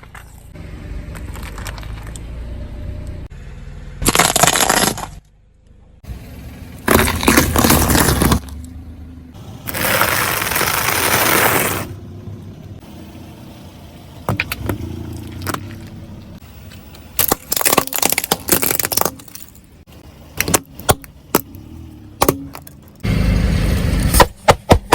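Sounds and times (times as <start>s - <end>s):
car engine running: 0.0s - 4.2s, 5.0s - 17.2s, 19.2s - 24.9s
tyres crushing brittle objects: 4.0s - 5.3s, 6.8s - 8.7s, 9.6s - 11.9s, 14.3s - 23.0s.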